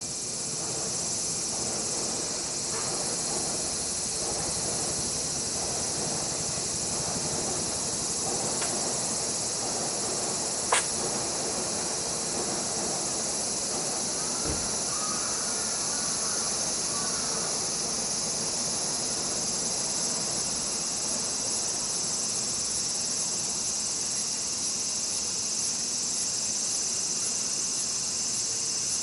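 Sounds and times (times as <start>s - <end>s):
high-pitched insect chorus: 0.0s - 29.0s.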